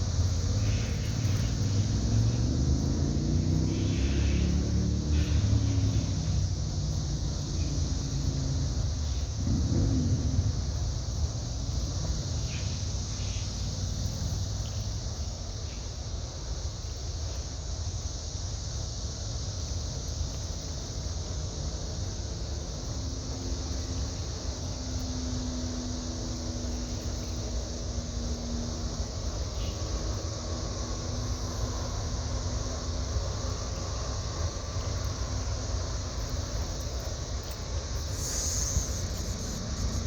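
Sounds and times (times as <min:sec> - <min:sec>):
boat engines rumbling: 0:00.0 - 0:18.4, 0:19.0 - 0:40.0
high hiss: 0:00.0 - 0:40.0
faint droning hum: 0:20.0 - 0:40.0.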